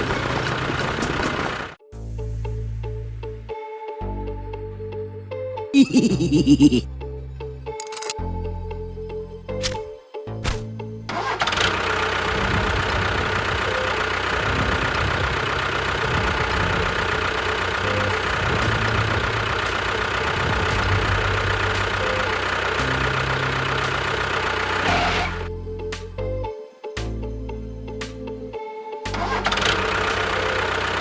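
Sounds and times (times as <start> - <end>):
motor running: 11.3 - 25.5, 29.1 - 31.0.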